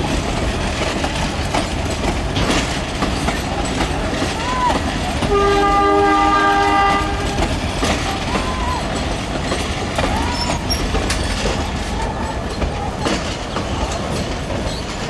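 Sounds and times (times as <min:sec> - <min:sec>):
train rumbling on track: 0:00.0 - 0:15.0
wheels clicking over rail joints: 0:00.0 - 0:15.0
wheel flange squeals: 0:07.8 - 0:12.6.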